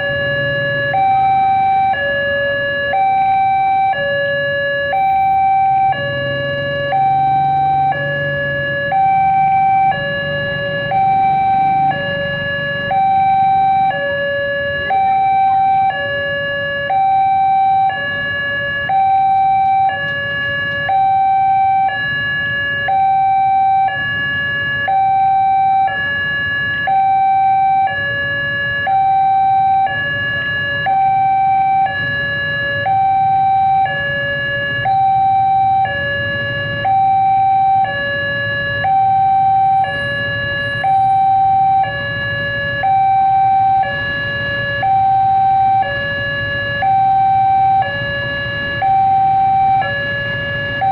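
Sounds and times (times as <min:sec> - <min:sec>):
two-tone level crossing siren: 0:00.0 - 0:50.9.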